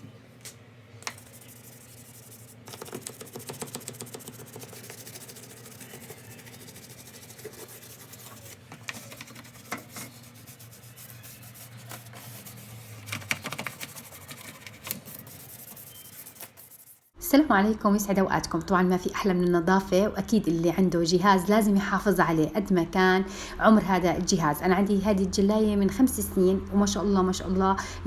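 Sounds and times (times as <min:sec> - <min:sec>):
steady low hum: 0:00.0 - 0:13.3
scrubbing strokes on a surface: 0:01.1 - 0:17.0.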